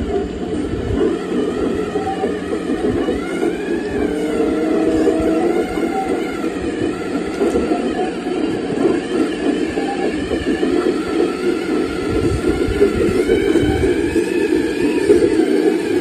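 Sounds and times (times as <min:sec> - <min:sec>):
toy bulldozer tracks rattling: 0:01.1 - 0:16.0.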